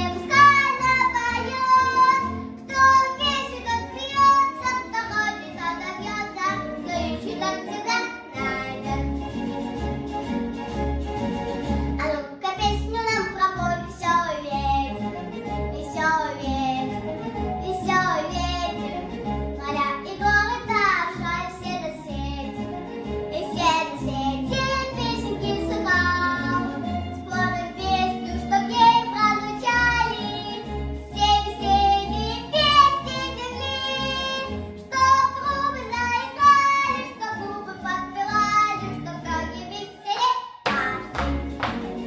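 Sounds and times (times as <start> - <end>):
girl singing: 0.0 - 9.1, 12.0 - 15.0, 15.7 - 22.6, 23.4 - 41.3
instrumental accompaniment with bass: 8.4 - 12.0, 12.6 - 39.4, 40.7 - 42.0.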